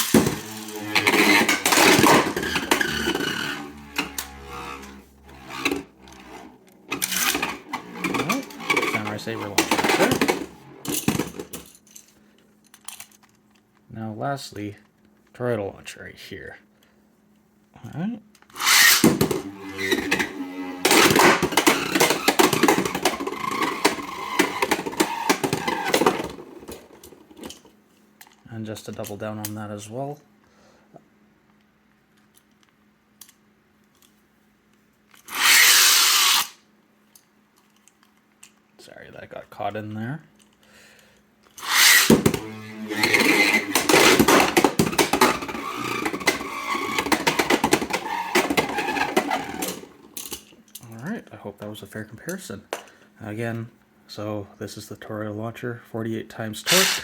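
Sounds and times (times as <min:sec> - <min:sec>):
spinning top launcher release: 0:00.0 - 0:11.6, 0:18.6 - 0:27.5, 0:35.3 - 0:36.6, 0:41.6 - 0:49.9, 0:56.7 - 0:57.0
spinning top clattering: 0:00.0 - 0:12.0, 0:18.6 - 0:27.7, 0:35.2 - 0:36.5, 0:41.6 - 0:50.6, 0:56.7 - 0:57.0.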